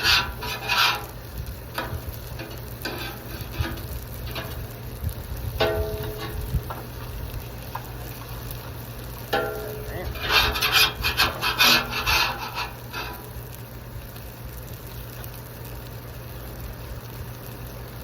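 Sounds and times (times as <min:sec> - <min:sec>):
metal spatula scraping griddle: 0:00.0 - 0:04.8, 0:05.5 - 0:07.1, 0:09.3 - 0:13.4
steady low hum: 0:00.0 - 0:18.0
metallic ring: 0:05.6 - 0:06.4, 0:09.3 - 0:10.7.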